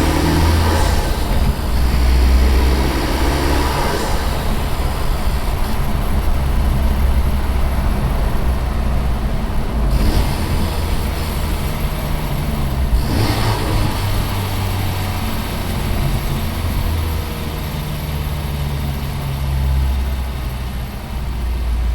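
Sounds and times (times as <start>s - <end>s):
car engine humming: 0.0s - 21.9s
road noise: 0.0s - 21.9s.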